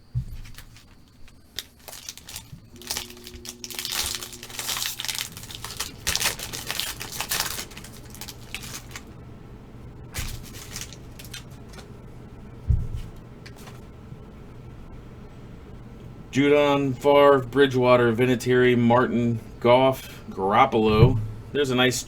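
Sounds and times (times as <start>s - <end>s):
foil wrapper tearing and crinkling: 0.4s - 9.2s, 10.1s - 11.9s.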